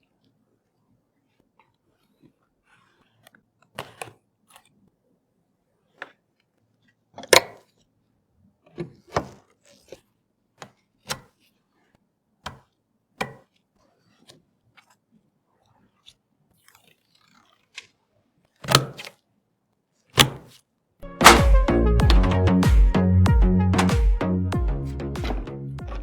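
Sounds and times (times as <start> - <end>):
computer parts clicking and knocking: 20.2 - 20.5.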